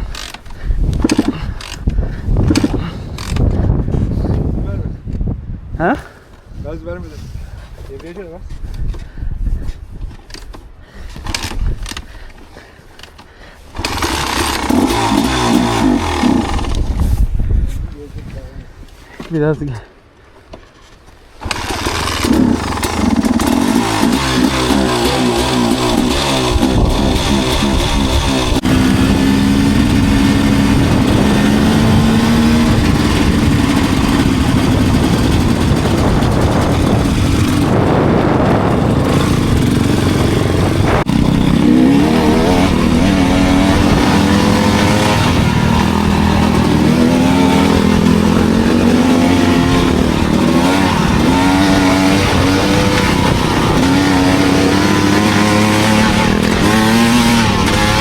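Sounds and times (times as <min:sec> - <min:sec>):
dirt bike engine revving: 0:00.0 - 0:03.7, 0:13.7 - 0:17.0, 0:21.4 - 0:58.0.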